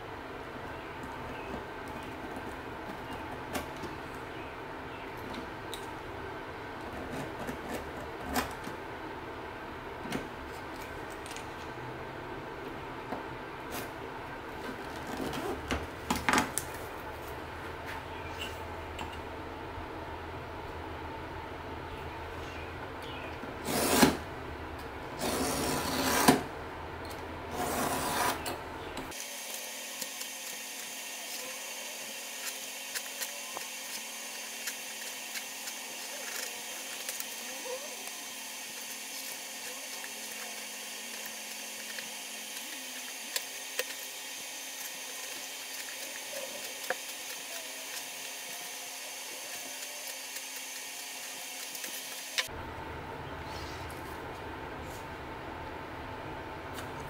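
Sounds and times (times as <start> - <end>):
small power tool running: 29.1 - 52.5.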